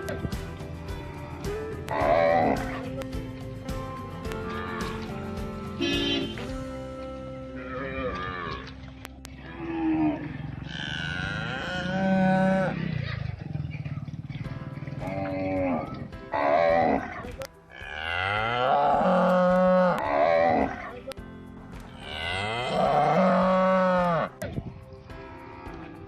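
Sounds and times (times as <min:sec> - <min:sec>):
cattle mooing: 0:01.2 - 0:02.9, 0:07.6 - 0:13.9, 0:14.9 - 0:21.0, 0:22.0 - 0:24.4.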